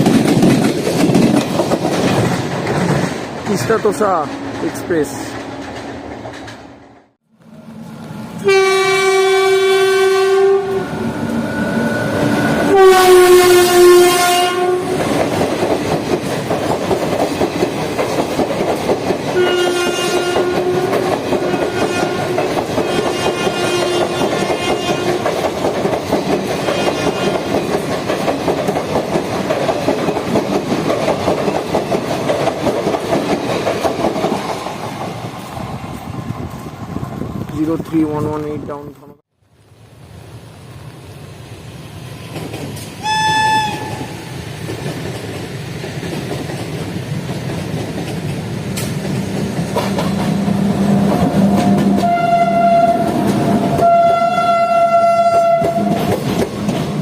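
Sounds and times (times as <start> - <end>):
train wheels rumbling over rail joints: 0.0 - 7.2, 9.5 - 38.8, 41.9 - 57.0
train horn blasts: 8.4 - 10.9, 12.7 - 15.0, 19.4 - 25.2, 26.6 - 27.5, 43.0 - 44.1, 52.0 - 53.2, 53.8 - 56.0.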